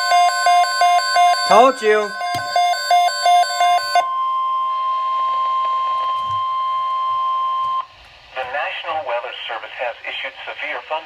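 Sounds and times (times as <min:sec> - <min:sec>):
fast repeating alarm beeps: 0:00.0 - 0:05.8
steady warning alarm tone: 0:00.0 - 0:07.9.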